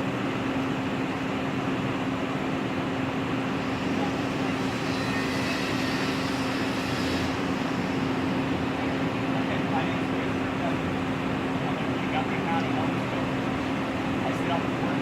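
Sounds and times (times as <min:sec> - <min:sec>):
constant low hum: 0:00.0 - 0:15.0
mechanical drone: 0:03.2 - 0:13.0.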